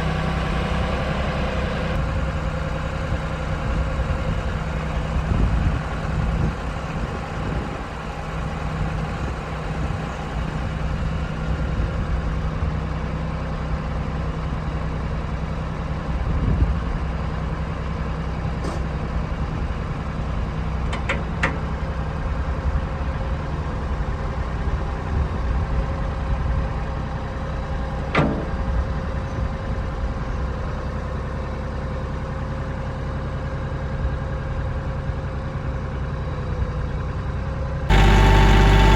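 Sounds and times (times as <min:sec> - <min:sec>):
tractor diesel engine running: 0:00.0 - 0:12.6, 0:37.9 - 0:38.9.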